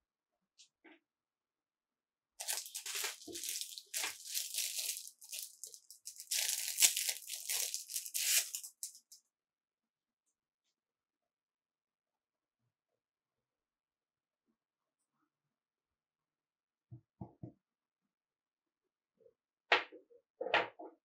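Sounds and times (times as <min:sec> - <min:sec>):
packaging tearing and crinkling: 0:02.4 - 0:09.2.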